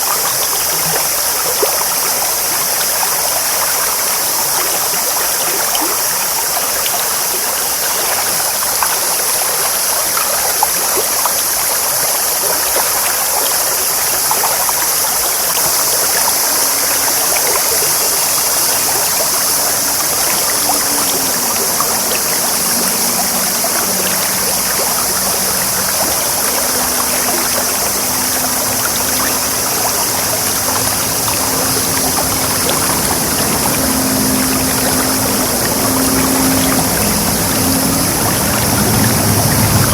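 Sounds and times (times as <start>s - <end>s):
stream babbling over stones: 0.0s - 39.9s
faint low hum: 15.9s - 39.9s.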